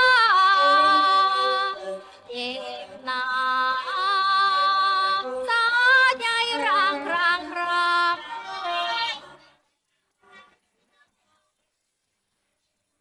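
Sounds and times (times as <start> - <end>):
woman singing unaccompanied: 0.0 - 9.4.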